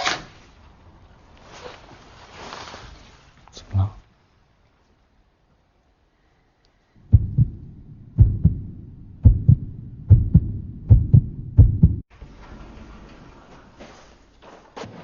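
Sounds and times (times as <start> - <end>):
heartbeat thumps: 7.0 - 12.1.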